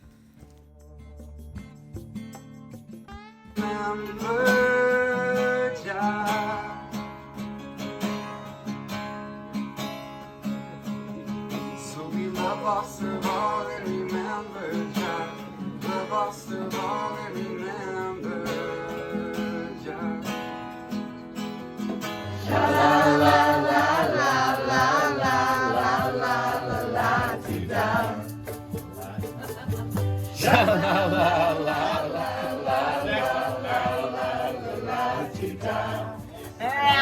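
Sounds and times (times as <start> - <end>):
strummed acoustic guitar: 0.0 - 37.0
person singing: 22.2 - 37.0.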